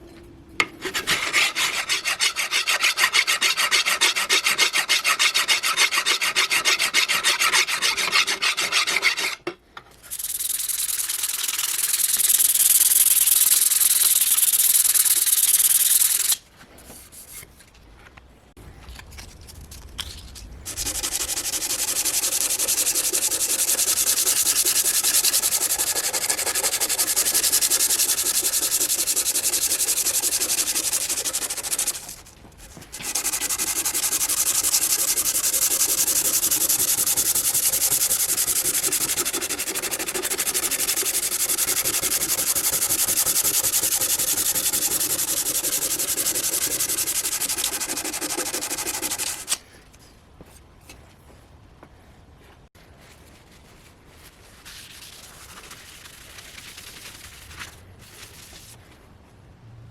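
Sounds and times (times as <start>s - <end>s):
filing and sanding strokes: 0.8s - 9.4s, 10.1s - 16.4s, 20.6s - 49.6s.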